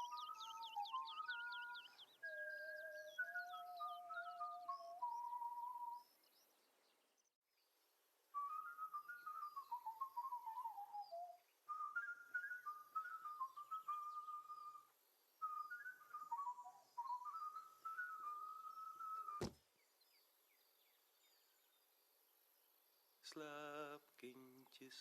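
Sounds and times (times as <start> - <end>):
person whistling a slow tune: 0.0 - 6.1, 8.4 - 19.5
birds chirping faintly: 0.0 - 25.0.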